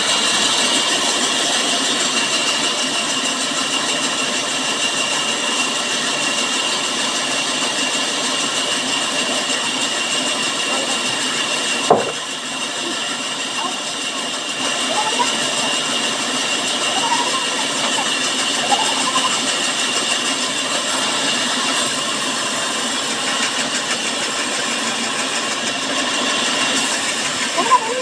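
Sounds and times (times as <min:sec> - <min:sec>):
sawmill saw whining: 0:00.0 - 0:28.0
sharp knock: 0:11.9 - 0:12.2.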